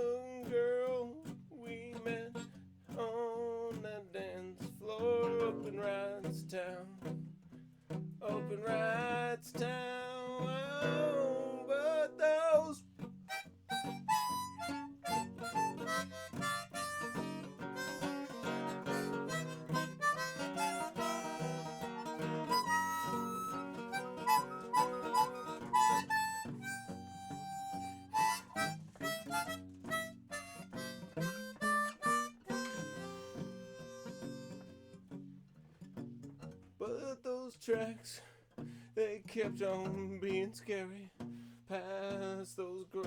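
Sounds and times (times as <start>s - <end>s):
plucked strings: 13.0s - 35.2s.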